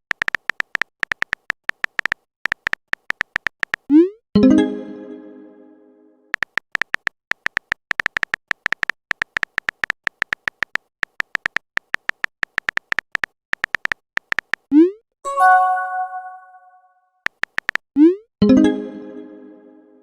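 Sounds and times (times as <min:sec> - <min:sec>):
chiming message tone: 0:04.4 - 0:05.8, 0:15.3 - 0:16.9.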